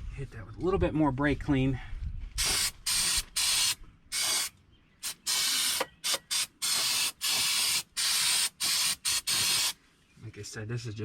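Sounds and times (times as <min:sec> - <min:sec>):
aerosol can spraying: 0:02.4 - 0:09.8.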